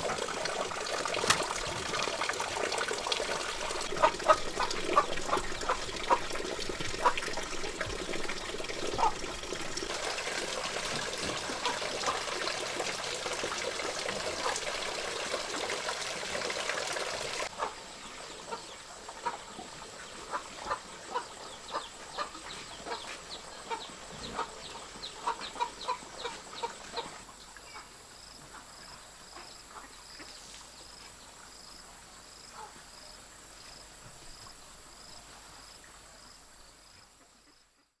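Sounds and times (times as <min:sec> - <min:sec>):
chickens clucking: 0:03.5 - 0:12.9, 0:17.3 - 0:28.7.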